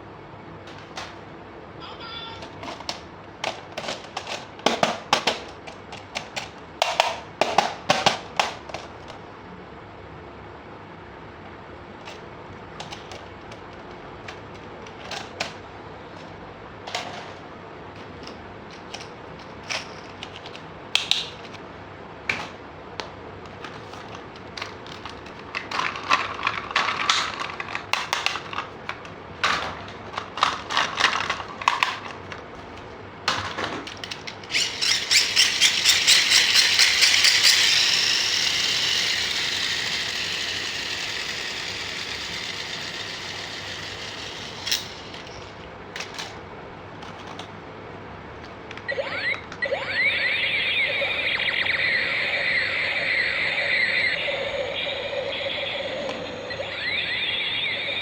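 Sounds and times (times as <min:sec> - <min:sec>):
plastic toy parts clicking: 0:33.8 - 0:46.3
whirring rattle: 0:33.9 - 0:46.3, 0:48.9 - 0:58.0.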